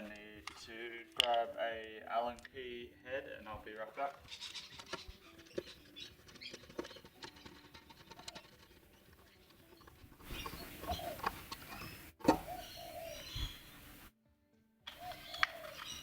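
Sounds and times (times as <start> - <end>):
hand tools clicking and clinking: 4.2 - 14.1, 14.9 - 16.0.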